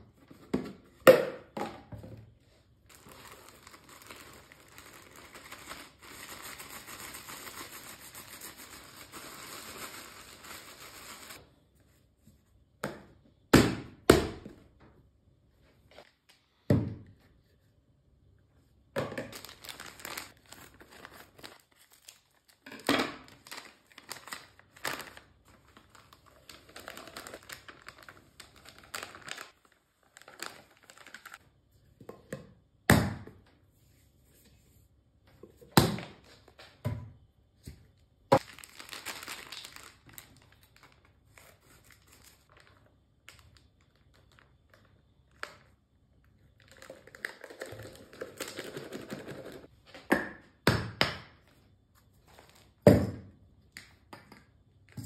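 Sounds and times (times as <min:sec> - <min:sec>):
rustling and crinkling: 0:19.2 - 0:31.4, 0:37.8 - 0:45.7.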